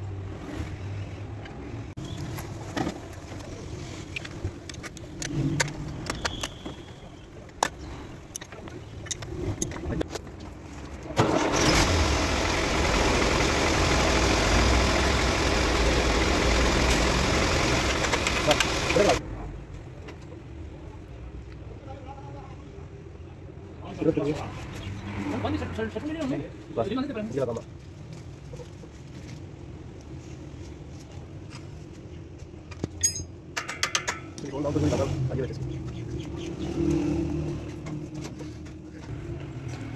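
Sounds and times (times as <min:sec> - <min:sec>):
tractor diesel engine running: 0:11.2 - 0:19.2
metal clink ringing: 0:33.0 - 0:33.4.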